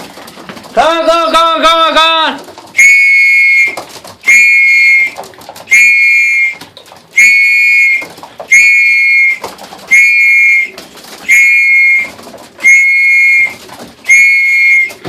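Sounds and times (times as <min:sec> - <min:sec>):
hand whistle blasts: 0:02.8 - 0:06.6, 0:07.2 - 0:10.7, 0:11.3 - 0:15.0.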